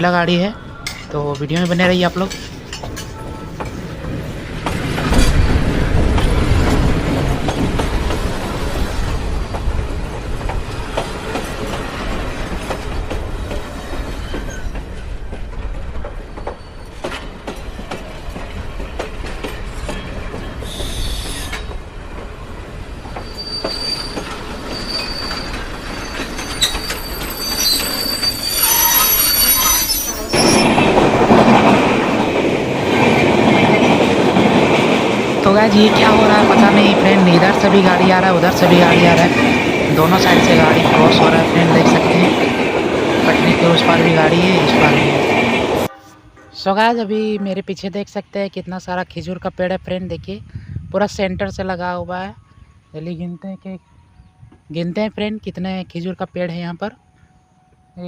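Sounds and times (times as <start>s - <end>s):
freight train rumbling and rattling: 0.0s - 48.0s
high wheel squeals: 20.0s - 21.7s, 23.1s - 30.9s.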